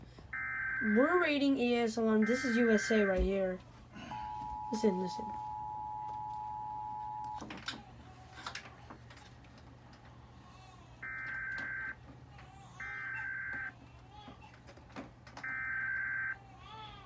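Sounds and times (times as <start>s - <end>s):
two-tone alert signal: 2.2s - 3.2s, 4.1s - 7.4s, 12.8s - 13.7s.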